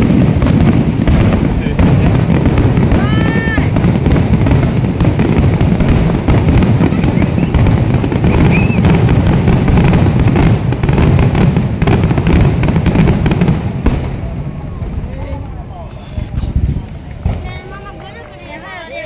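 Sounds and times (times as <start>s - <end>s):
low booming rumble: 0.0s - 15.5s
fireworks bursts and crackles: 0.0s - 19.0s.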